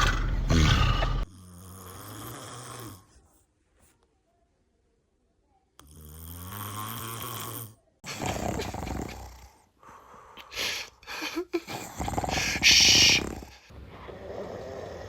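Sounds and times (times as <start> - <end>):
snoring: 0.0 - 3.2, 5.8 - 9.7, 11.6 - 15.0.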